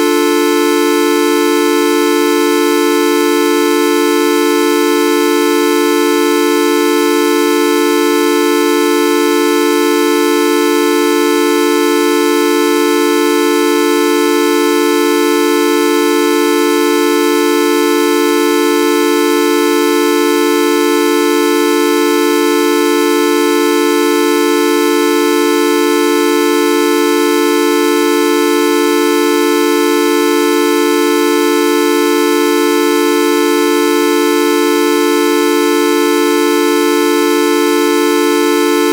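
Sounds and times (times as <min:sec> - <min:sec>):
loud horn-like tone: 0:37.9 - 0:38.9.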